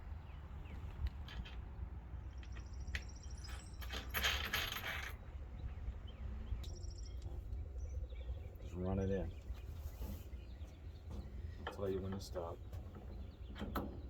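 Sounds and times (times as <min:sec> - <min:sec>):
metal hardware clinking and rattling: 0:01.1 - 0:05.2.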